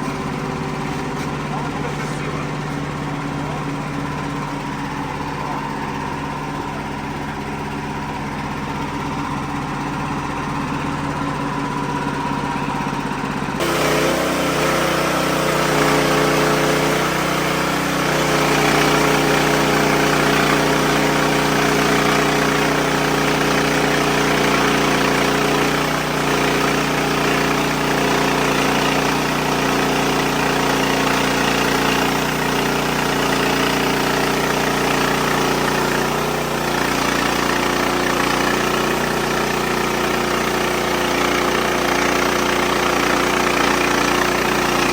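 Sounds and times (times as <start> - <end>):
band sawmill engine drone: 0.0 - 44.9
saw blade cutting log hiss: 13.6 - 25.8.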